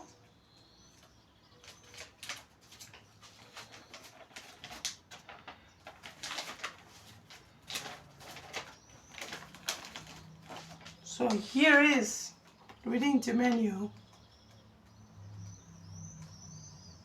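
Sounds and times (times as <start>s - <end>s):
paper rustling: 1.6s - 11.8s.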